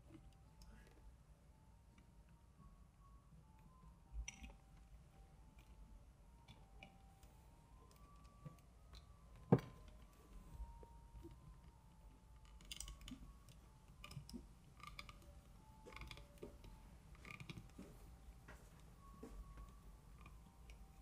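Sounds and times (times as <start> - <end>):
toy clicking: 12.4 - 17.8.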